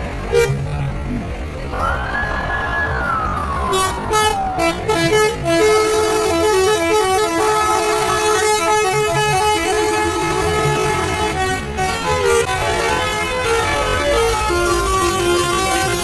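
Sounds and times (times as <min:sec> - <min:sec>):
multi-tone bus horn tune: 0:00.1 - 0:00.7, 0:03.7 - 0:16.0.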